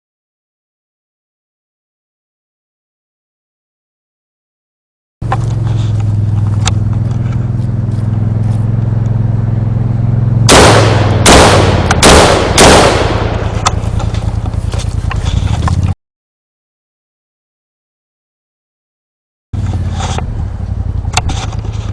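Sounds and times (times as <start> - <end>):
steady low hum: 5.2 - 16.0, 19.6 - 21.9
machine-gun fire bursts: 10.5 - 13.9.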